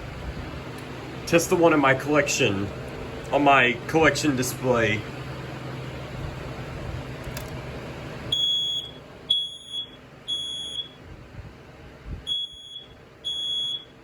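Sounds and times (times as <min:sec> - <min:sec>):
click: 0:07.2 - 0:07.6
smoke alarm beeping: 0:08.3 - 0:11.0, 0:12.2 - 0:14.0.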